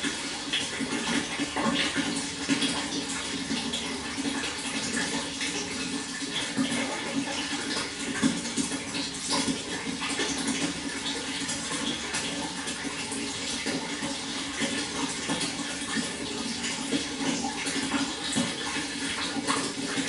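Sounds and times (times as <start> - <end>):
small water splashes: 0.0 - 20.0
water flowing: 0.0 - 20.0.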